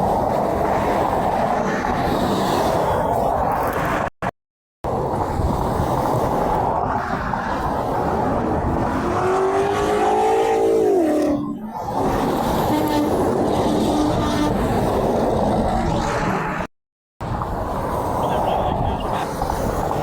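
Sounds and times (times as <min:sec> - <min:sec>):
highway traffic rushing past: 0:04.9 - 0:20.0
truck air horn: 0:12.6 - 0:14.7.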